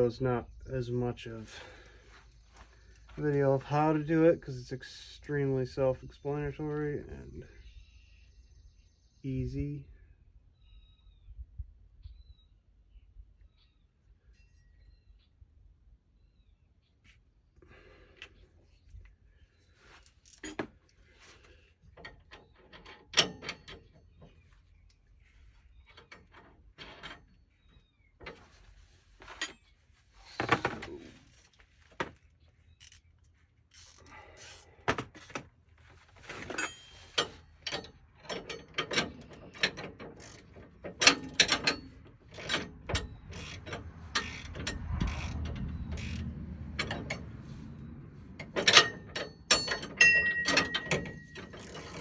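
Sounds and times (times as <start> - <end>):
metal clicks and knocks: 22.0 - 24.4, 36.3 - 52.0
ratchet wrench clicking: 38.5 - 47.3, 48.4 - 52.0.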